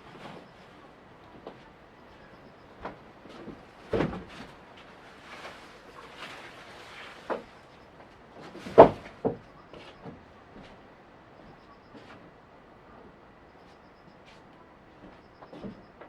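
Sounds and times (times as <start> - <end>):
sharp knocks and thuds: 2.8 - 4.5, 8.6 - 9.4.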